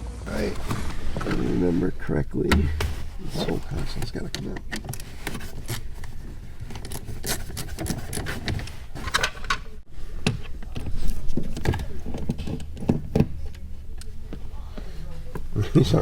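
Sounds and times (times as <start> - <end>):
tools and screws rattling: 2.4 - 9.8
irregular knocks: 2.5 - 3.2.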